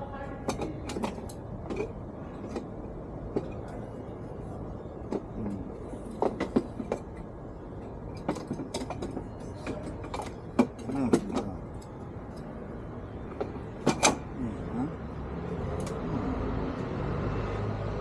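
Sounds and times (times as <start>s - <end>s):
clicks and knocks of parts handled: 0.5s - 3.8s, 5.0s - 12.5s, 13.3s - 14.3s, 15.7s - 16.0s.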